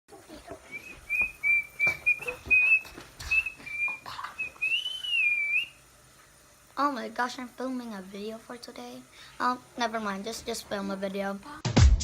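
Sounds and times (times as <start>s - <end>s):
person whistling: 0.7s - 5.8s.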